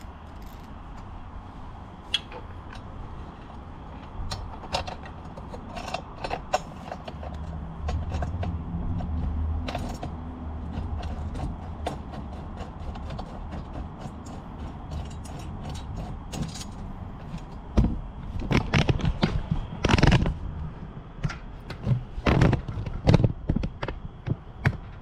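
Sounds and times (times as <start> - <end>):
metal tools clicking and clinking: 14.0 - 17.6.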